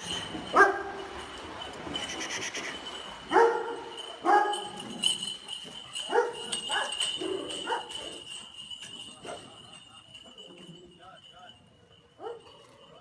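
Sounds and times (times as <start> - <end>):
dog barking: 0.5 - 1.0, 3.3 - 4.8, 6.0 - 8.0, 12.2 - 12.6.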